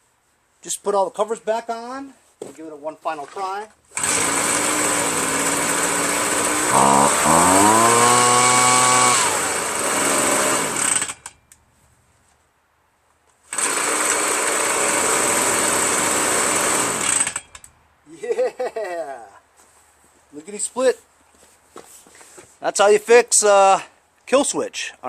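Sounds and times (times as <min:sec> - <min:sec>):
leaf blower engine idling and revving: 0:03.9 - 0:11.3, 0:13.5 - 0:17.4.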